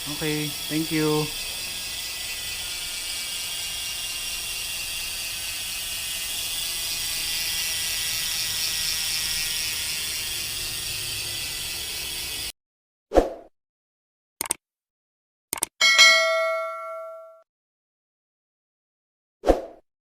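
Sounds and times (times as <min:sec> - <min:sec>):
bike freehub clicking: 0:00.0 - 0:12.5, 0:15.5 - 0:15.7.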